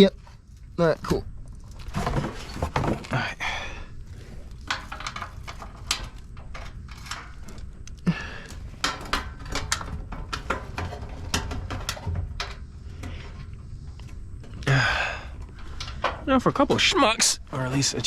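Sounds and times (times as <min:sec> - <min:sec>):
low steady hum: 0:00.0 - 0:18.0
hand tools clicking and knocking: 0:04.5 - 0:14.7.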